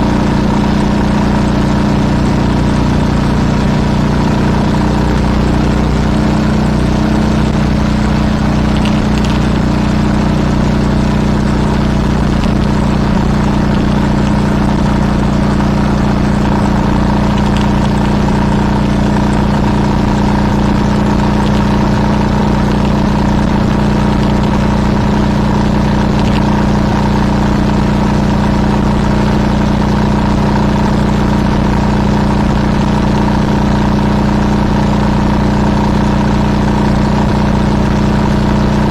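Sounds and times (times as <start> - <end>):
road noise: 0.0 - 38.9
vehicle engine droning: 0.0 - 38.9.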